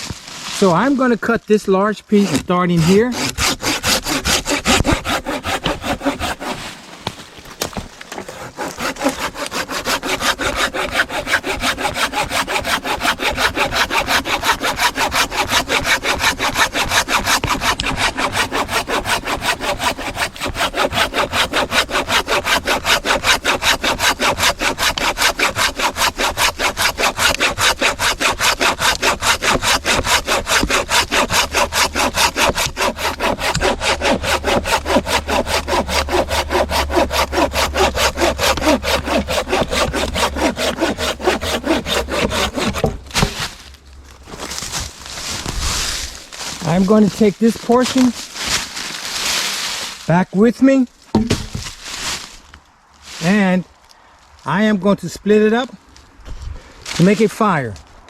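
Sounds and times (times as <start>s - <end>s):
hand saw cutting wood: 1.8s - 6.8s, 7.7s - 43.6s, 44.3s - 50.6s, 56.8s - 57.7s.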